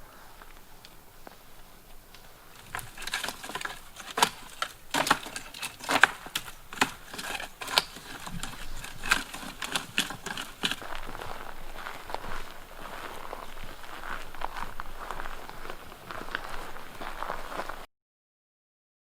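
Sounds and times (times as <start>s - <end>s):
footsteps on dry ground: 0.0s - 17.9s.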